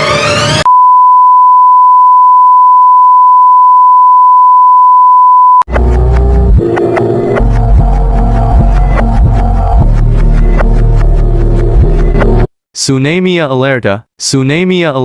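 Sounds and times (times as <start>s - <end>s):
music with low drone: 5.7s - 12.5s.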